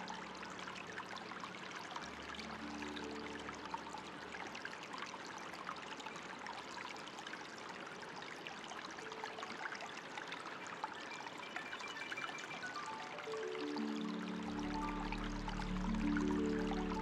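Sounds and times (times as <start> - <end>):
soft music notes: 0.0 - 5.0, 9.0 - 17.0
water trickling and splashing: 0.0 - 17.0.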